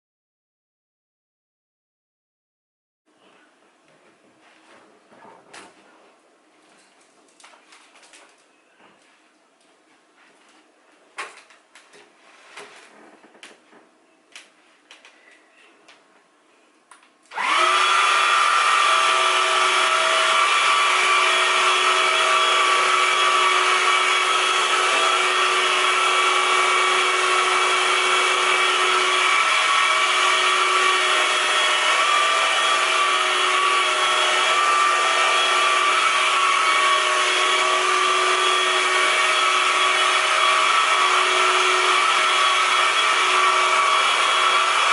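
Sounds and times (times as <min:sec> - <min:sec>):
motor whirring with whine: 0:17.3 - 0:44.9.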